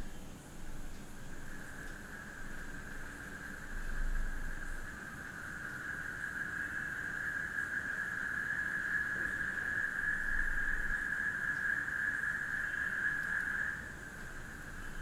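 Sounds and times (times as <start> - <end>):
crickets chirping: 0.0 - 15.0
frogs calling: 1.2 - 15.0.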